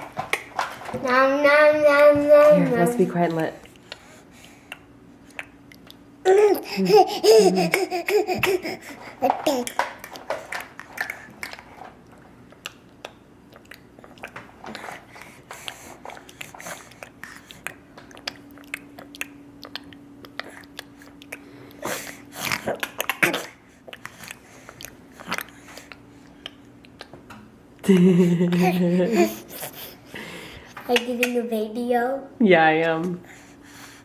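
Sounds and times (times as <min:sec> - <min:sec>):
wet mouth noises and lip smacks: 0:04.7 - 0:06.1, 0:12.4 - 0:14.4, 0:15.6 - 0:21.8, 0:22.5 - 0:27.2.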